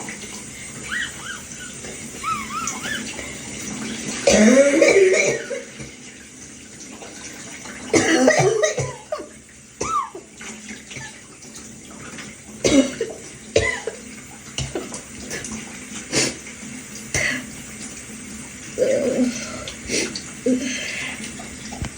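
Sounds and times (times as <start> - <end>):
shower running: 0.0 - 21.9
pitched wheeze: 0.8 - 3.3
person coughing wheezily: 4.2 - 5.7, 7.9 - 10.2, 12.6 - 14.0, 17.2 - 17.4.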